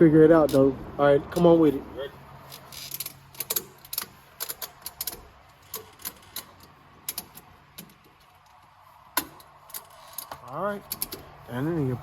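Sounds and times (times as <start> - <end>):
metal strap hardware clicking: 2.5 - 8.0.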